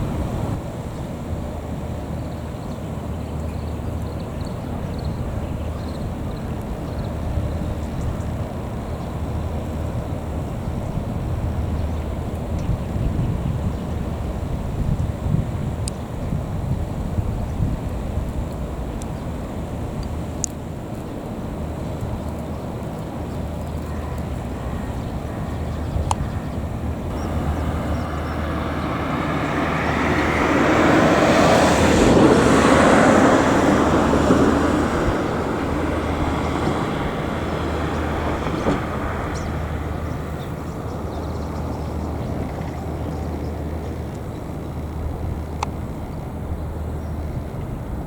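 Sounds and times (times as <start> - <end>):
steady low hum: 3.0 - 31.2
vehicle passing by: 23.8 - 48.0.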